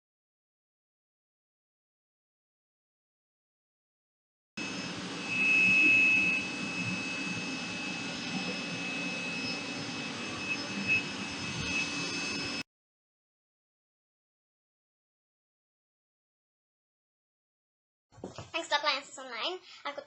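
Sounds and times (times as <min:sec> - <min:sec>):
vacuum cleaner running: 0:04.6 - 0:12.6.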